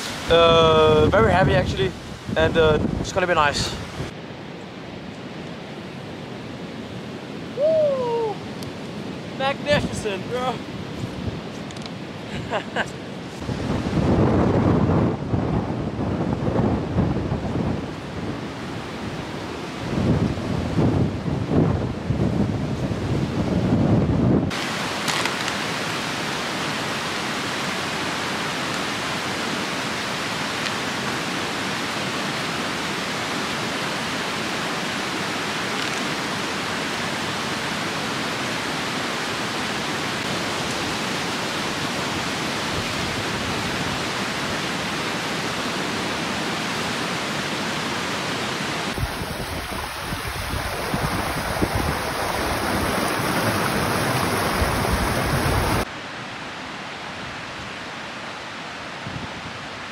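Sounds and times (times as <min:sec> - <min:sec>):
wind buffeting microphone: 0:00.0 - 0:04.2, 0:04.9 - 0:12.5, 0:13.2 - 0:24.6, 0:48.8 - 0:55.9
strong wind rushing: 0:00.0 - 0:05.0, 0:13.2 - 0:24.6, 0:48.7 - 0:55.9.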